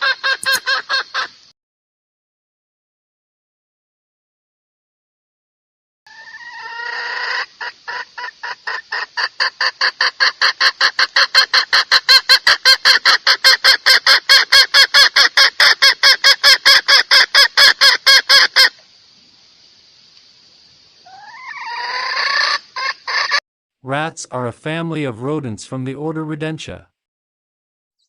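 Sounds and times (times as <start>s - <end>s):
chicken clucking rapidly: 0.0s - 1.4s, 6.1s - 18.8s, 21.1s - 23.4s
chicken rising call: 6.1s - 18.8s, 21.0s - 23.4s.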